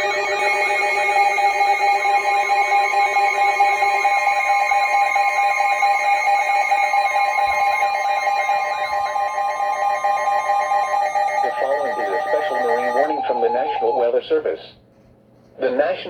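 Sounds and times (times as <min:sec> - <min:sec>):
steady electronic tones: 0:05.9 - 0:14.2
warbling tone: 0:07.9 - 0:14.1.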